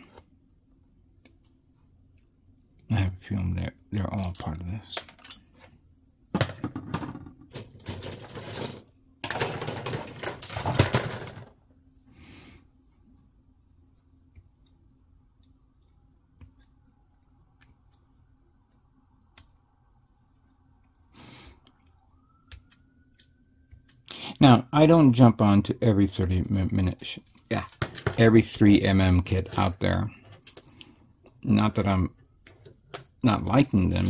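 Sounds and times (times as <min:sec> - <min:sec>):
plastic parts clattering: 0:06.4 - 0:11.6.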